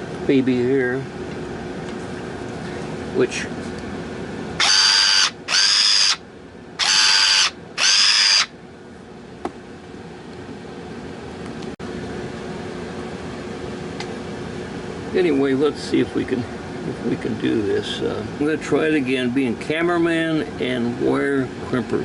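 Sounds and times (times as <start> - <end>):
electric shear motor whining: 4.6 - 6.2, 6.8 - 8.5.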